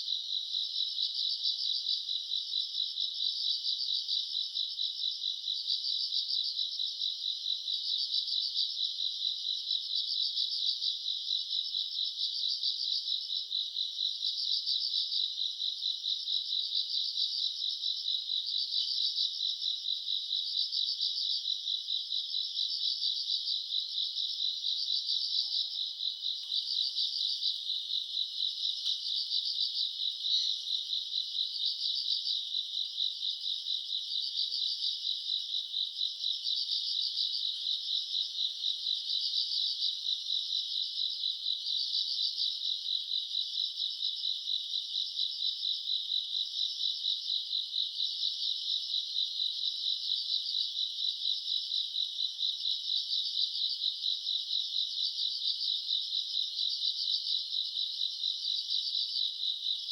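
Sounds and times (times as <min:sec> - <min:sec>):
crickets trilling: 0:24.9 - 0:31.8.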